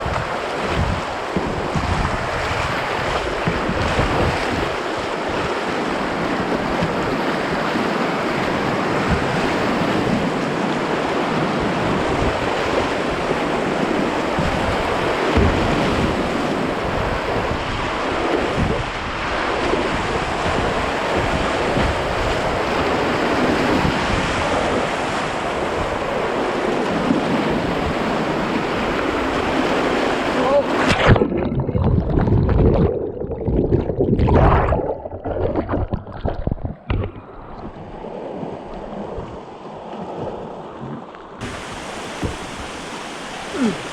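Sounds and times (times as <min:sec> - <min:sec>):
whitewater river rapids: 0:00.0 - 0:31.0, 0:41.4 - 0:43.9
wind buffeting microphone: 0:00.0 - 0:43.9.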